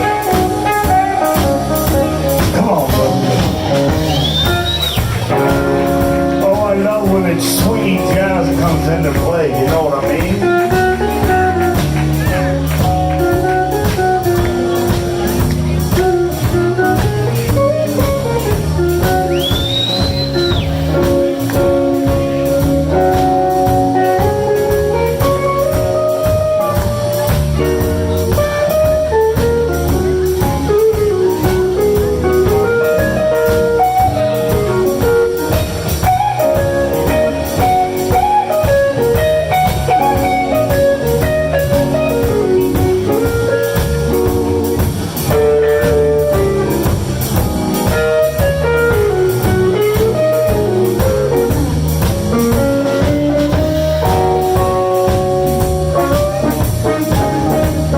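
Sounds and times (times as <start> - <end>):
drum kit: 0.0 - 57.9
guitar lead: 0.0 - 57.9
high whistle: 3.9 - 5.2, 19.3 - 20.9.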